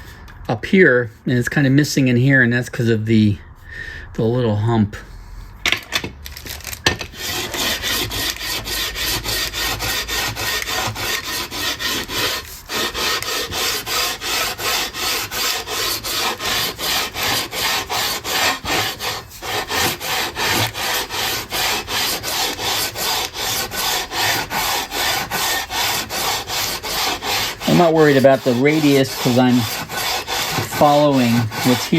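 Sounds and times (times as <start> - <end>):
sandpaper sanding wood: 7.2 - 31.9.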